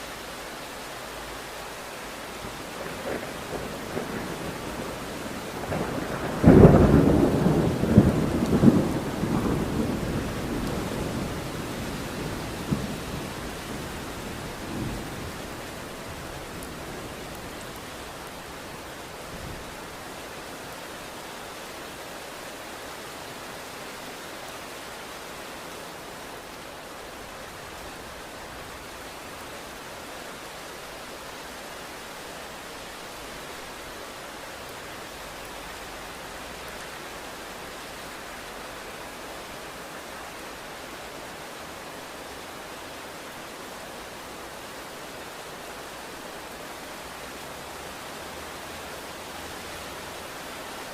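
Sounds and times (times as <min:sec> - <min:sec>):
steady rain: 0:00.0 - 0:50.9
thunder: 0:02.6 - 0:15.6.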